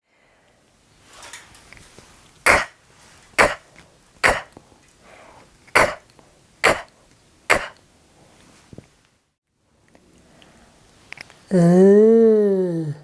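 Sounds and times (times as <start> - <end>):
woman making throaty consonant sound: 6.6 - 6.9, 11.5 - 13.0.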